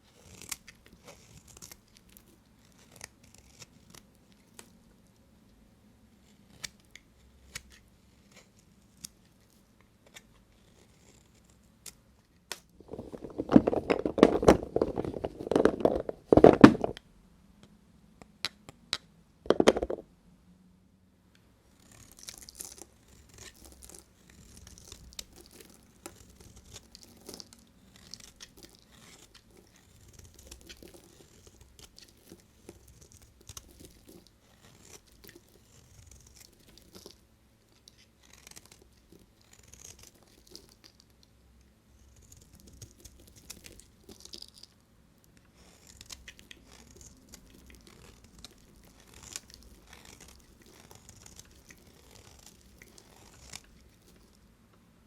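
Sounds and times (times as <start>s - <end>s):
knife crunching through soap: 0.1s - 4.7s, 6.2s - 9.3s, 10.0s - 17.0s, 21.8s - 41.2s, 42.0s - 44.7s, 45.5s - 54.4s
scraping crackle: 12.8s - 17.0s, 21.8s - 37.2s, 37.8s - 41.0s, 45.5s - 54.4s.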